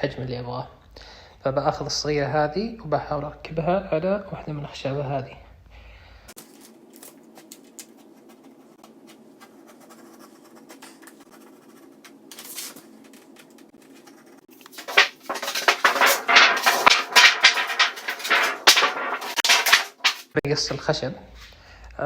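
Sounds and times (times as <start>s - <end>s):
wood scraping and knocking: 14.6s - 20.4s.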